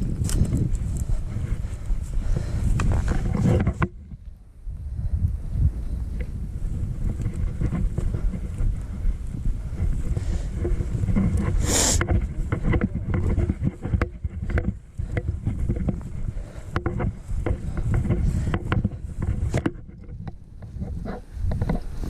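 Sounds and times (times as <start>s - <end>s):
footsteps crackling through brush: 0.0s - 4.4s
wind buffeting microphone: 0.0s - 22.0s.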